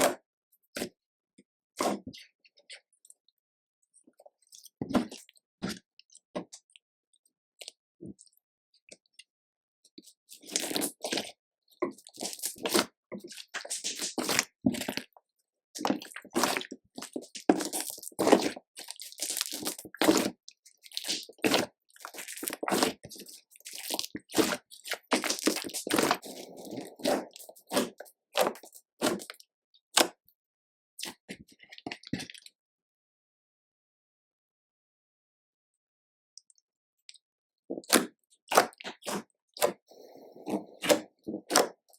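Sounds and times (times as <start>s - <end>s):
slime squishing and crackling: 10.3s - 15.2s, 15.8s - 29.4s, 37.8s - 39.8s, 40.4s - 41.9s.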